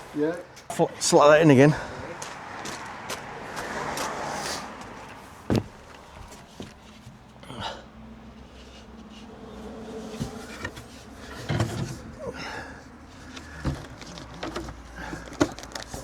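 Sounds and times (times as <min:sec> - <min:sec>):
panel knocking and scraping: 0:05.5 - 0:07.1, 0:09.6 - 0:12.2, 0:13.2 - 0:16.0.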